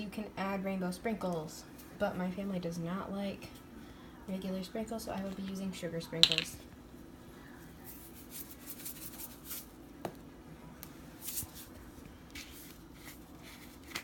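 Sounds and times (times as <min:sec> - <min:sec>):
scraping and rustling in a mug: 0:07.8 - 0:09.7, 0:11.2 - 0:14.0.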